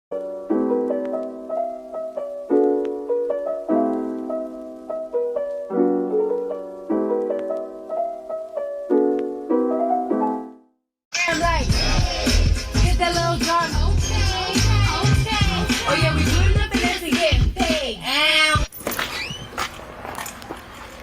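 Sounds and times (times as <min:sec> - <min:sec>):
piano chords: 0:00.1 - 0:10.7.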